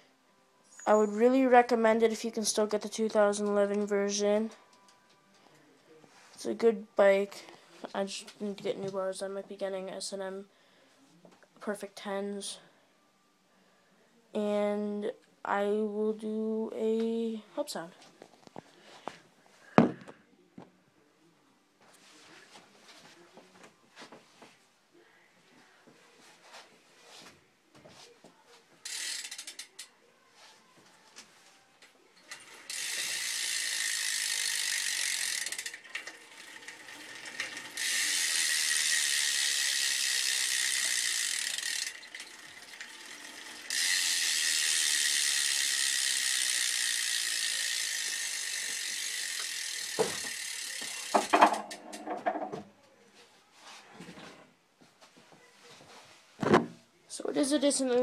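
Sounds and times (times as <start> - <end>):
bicycle hub clicking while freewheeling: 28.8 - 29.9, 32.3 - 51.4.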